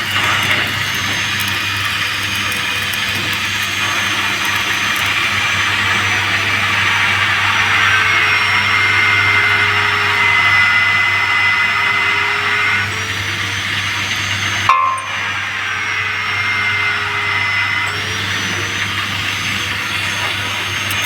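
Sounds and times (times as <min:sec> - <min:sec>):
welding arc crackling and hissing: 0:00.0 - 0:12.6.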